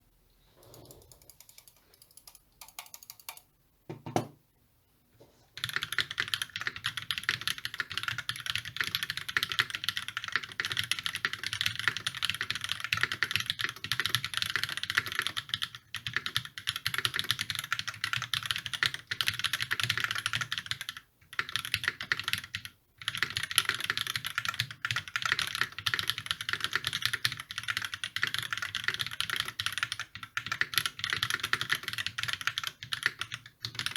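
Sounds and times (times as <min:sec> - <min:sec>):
mechanical keyboard typing: 0:00.7 - 0:04.0, 0:05.6 - 0:33.9.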